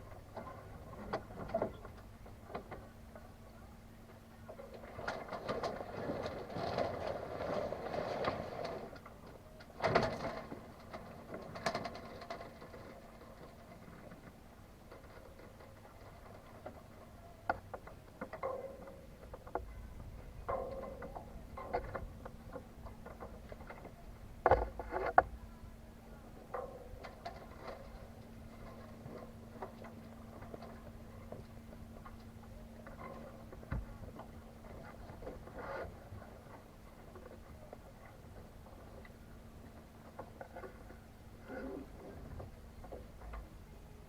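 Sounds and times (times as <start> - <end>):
faint steady hum: 0.0 - 44.0
boat gear knocking and clicking: 8.9 - 25.4.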